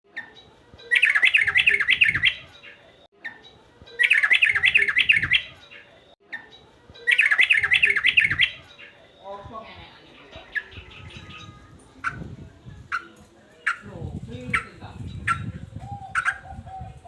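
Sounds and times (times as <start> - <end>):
bulbul singing: 0.1 - 17.0.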